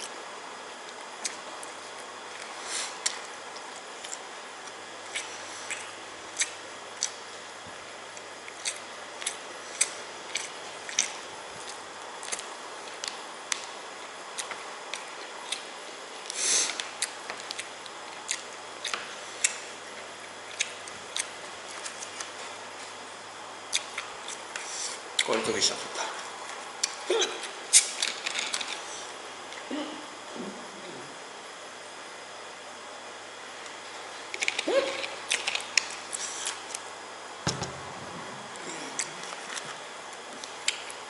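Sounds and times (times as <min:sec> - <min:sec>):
person chewing noodles: 0:08.2 - 0:13.2, 0:14.3 - 0:19.8, 0:23.6 - 0:25.3.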